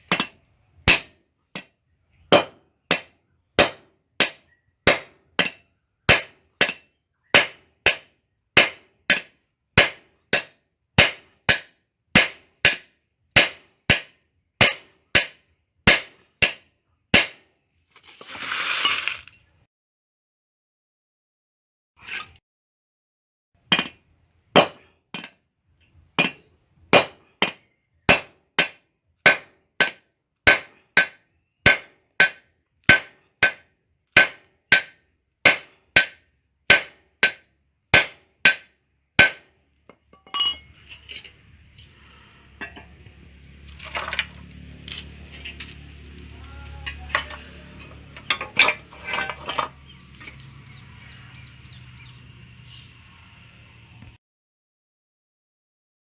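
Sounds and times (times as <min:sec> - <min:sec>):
hammer striking hot rivet: 0:00.1 - 0:01.7, 0:02.3 - 0:06.8, 0:07.4 - 0:16.6, 0:17.2 - 0:17.4, 0:24.6 - 0:25.3, 0:26.2 - 0:33.6, 0:34.2 - 0:39.5
low workshop hum: 0:39.2 - 0:54.2
clinks and knocks: 0:39.9 - 0:50.6.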